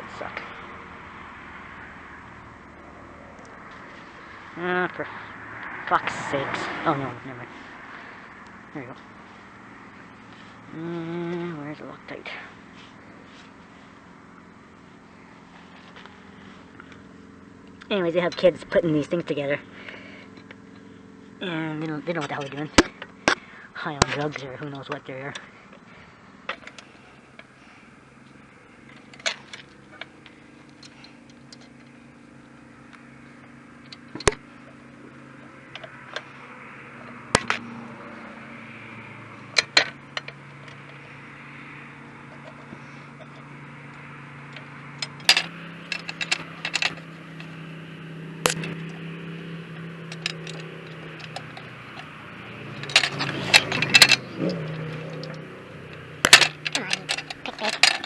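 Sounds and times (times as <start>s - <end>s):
steady low hum: 0.0s - 58.0s
metal tools clinking: 28.8s - 32.0s, 44.4s - 58.0s.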